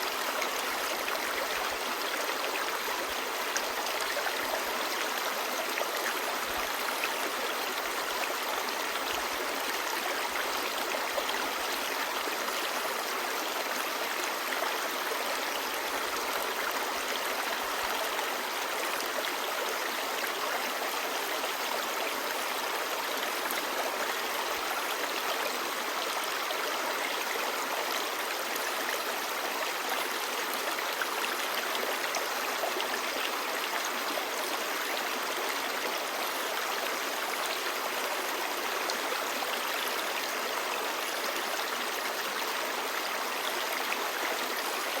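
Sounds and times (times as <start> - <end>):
stream babbling over stones: 0.0 - 45.0.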